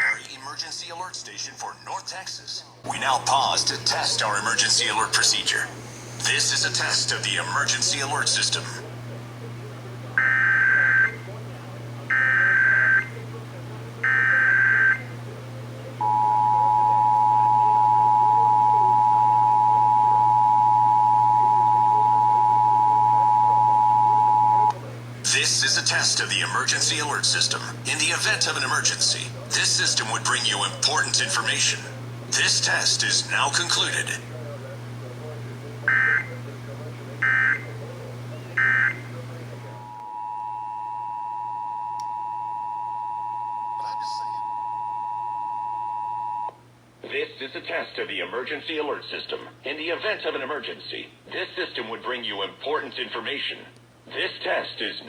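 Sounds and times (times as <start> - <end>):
faint low hum: 0.0 - 55.0
two-tone attention signal: 16.0 - 24.7, 39.9 - 46.5.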